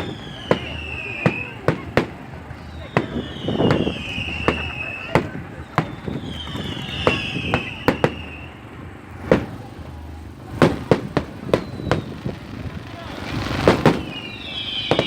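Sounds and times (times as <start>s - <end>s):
falling firework whistle: 0.0s - 9.6s, 10.6s - 15.0s
firework bangs: 0.0s - 15.0s
firework hiss: 0.0s - 15.0s.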